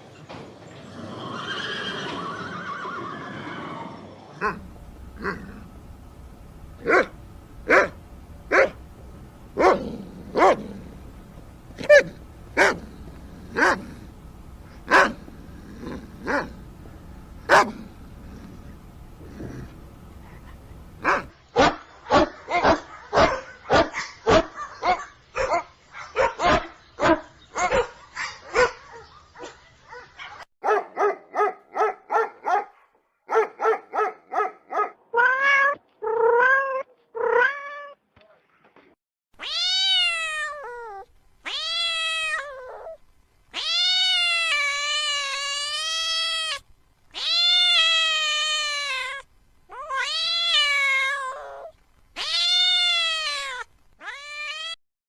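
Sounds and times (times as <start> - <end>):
cat meowing: 39.4 - 43.0, 43.6 - 46.6, 47.2 - 54.8.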